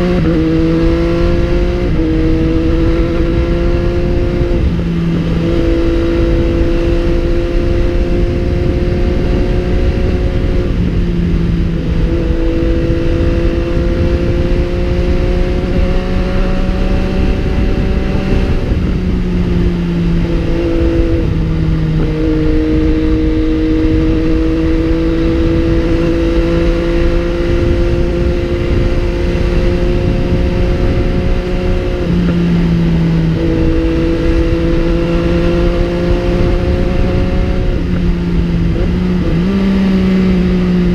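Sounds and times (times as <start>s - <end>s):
motorcycle engine: 0.0s - 40.9s
road rumble: 0.0s - 40.9s
wind noise: 0.0s - 40.9s.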